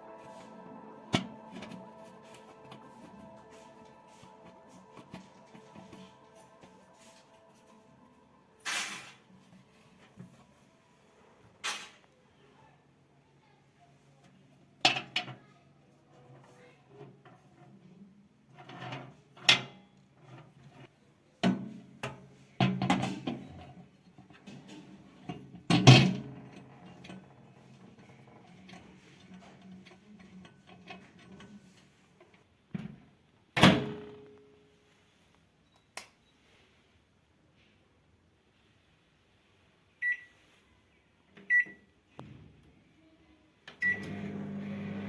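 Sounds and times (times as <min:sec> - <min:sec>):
brief ringing tone: 0:00.0 - 0:09.1
low steady hum: 0:00.0 - 0:10.9.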